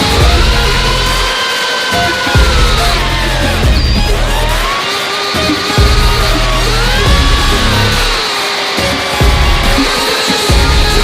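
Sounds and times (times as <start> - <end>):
song with heavy bass and synth: 0.0 - 11.0.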